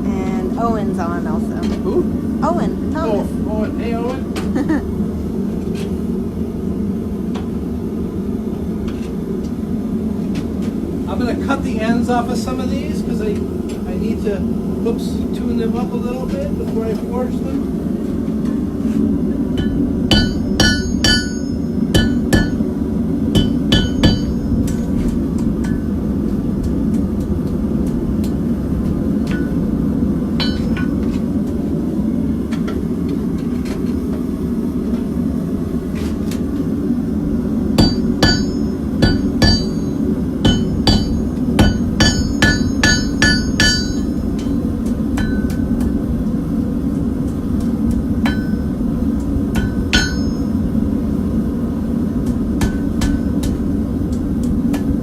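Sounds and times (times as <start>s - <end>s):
hammer ringing on anvil: 19.6s - 22.6s, 23.4s - 24.9s, 30.4s - 31.0s, 37.8s - 44.6s, 45.2s - 45.7s, 48.3s - 48.7s, 49.6s - 50.6s.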